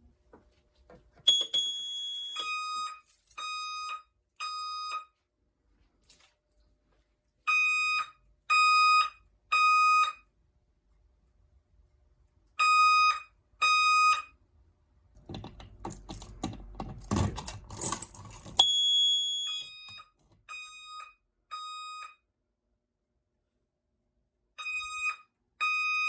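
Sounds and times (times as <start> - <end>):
fire alarm horn beeping: 1.3 - 5.2, 7.5 - 10.3, 12.6 - 14.3, 18.6 - 22.2, 24.6 - 26.0.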